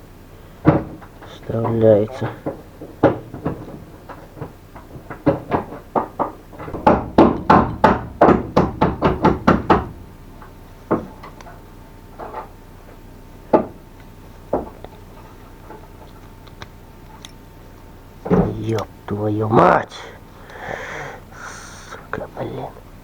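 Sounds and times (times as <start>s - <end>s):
knocking on metal parts: 0.6s - 11.6s, 14.5s - 14.9s.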